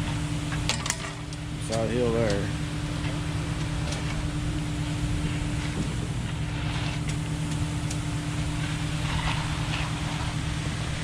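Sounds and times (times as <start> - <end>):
pump truck engine hum: 0.0 - 11.0.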